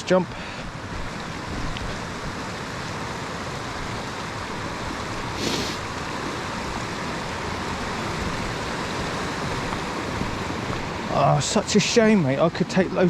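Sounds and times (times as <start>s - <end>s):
river rushing over rocks: 0.0s - 13.0s
brief scuffing noise: 5.4s - 5.8s.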